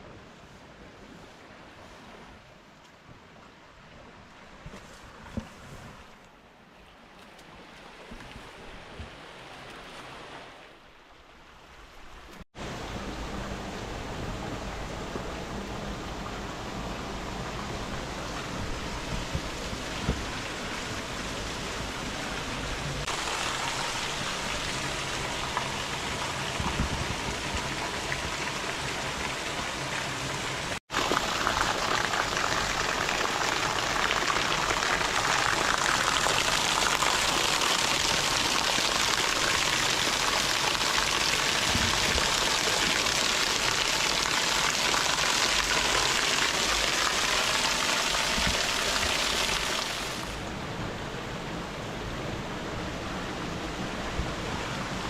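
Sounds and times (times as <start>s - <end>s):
rushing water: 0.0s - 55.0s.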